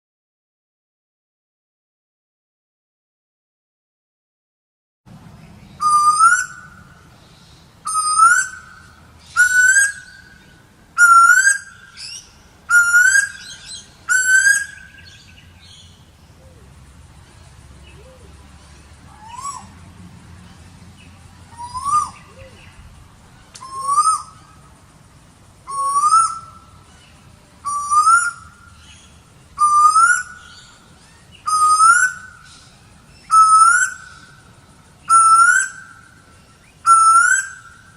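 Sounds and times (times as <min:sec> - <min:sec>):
bird whistled calls: 0:05.7 - 0:16.7, 0:19.1 - 0:19.7, 0:21.5 - 0:22.8, 0:23.4 - 0:24.7, 0:25.6 - 0:37.9.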